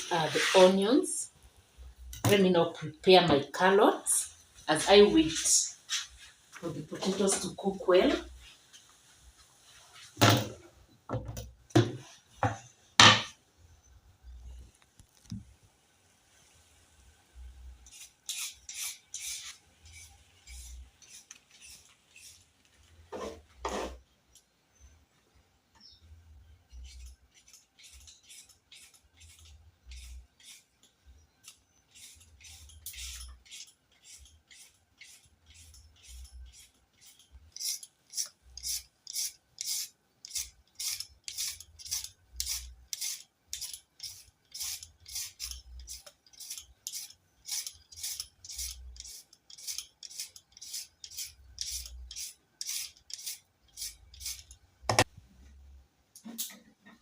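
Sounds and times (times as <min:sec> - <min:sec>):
carrot being scraped: 0:00.0 - 0:00.9, 0:17.8 - 0:22.5, 0:23.1 - 0:24.0, 0:26.8 - 0:30.7, 0:31.4 - 0:54.5.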